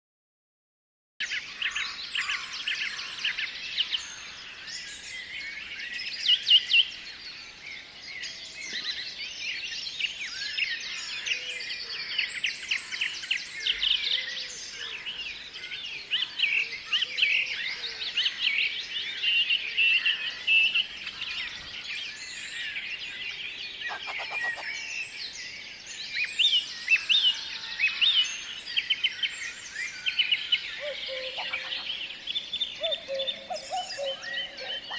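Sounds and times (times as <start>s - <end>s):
songbirds chirping and singing: 1.2s - 34.9s.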